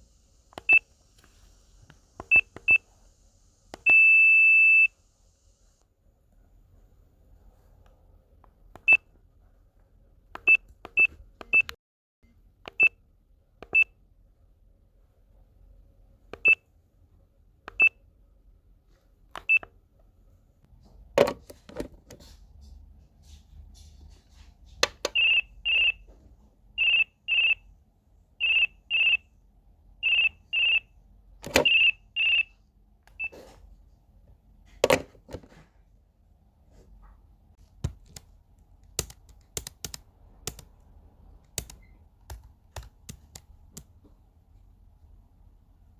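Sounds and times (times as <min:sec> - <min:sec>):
electronic key beeps: 0:25.1 - 0:26.0, 0:31.6 - 0:32.5.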